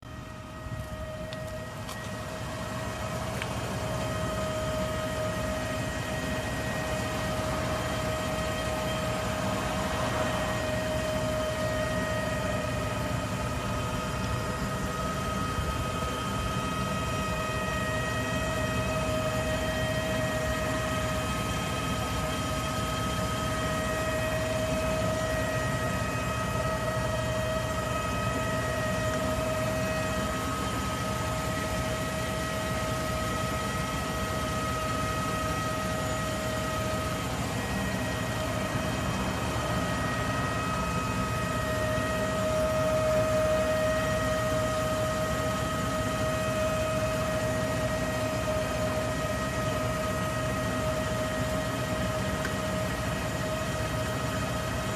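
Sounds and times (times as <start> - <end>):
engine idle rumble: 0.0 - 54.9
fuel pump whine: 0.0 - 54.9.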